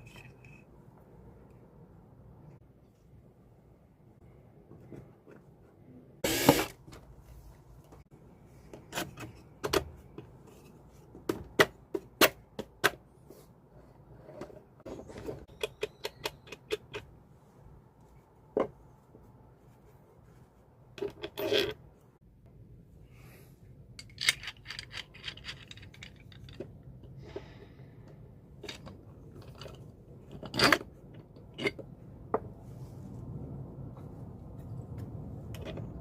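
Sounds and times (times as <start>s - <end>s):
tools clicking and tapping: 15.5s - 17.1s.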